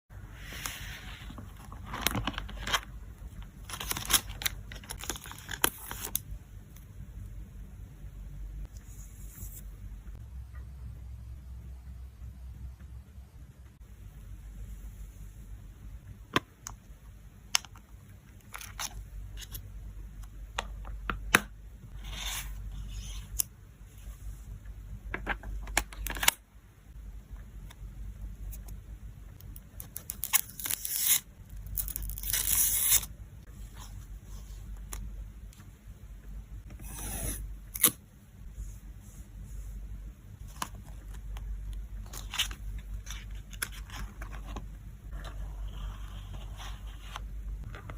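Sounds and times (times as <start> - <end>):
packaging crinkling and rustling: 1.3 - 6.2.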